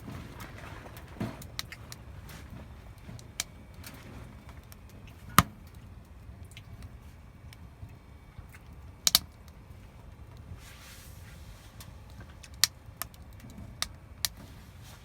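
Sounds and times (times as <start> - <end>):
firewood crackling and popping: 0.0 - 15.0.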